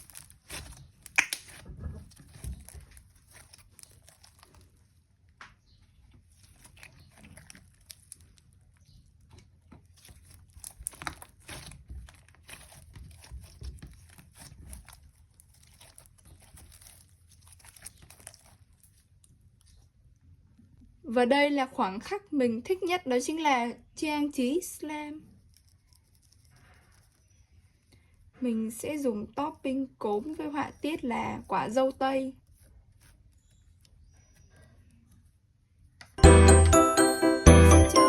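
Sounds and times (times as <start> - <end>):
slime sticky clicks and crackles: 0.0 - 4.8, 6.3 - 19.0.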